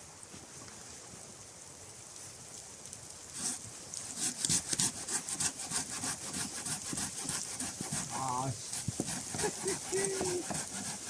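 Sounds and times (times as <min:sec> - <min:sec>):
faint steady hiss: 0:00.0 - 0:11.0
blade rasping on wood: 0:03.4 - 0:11.0.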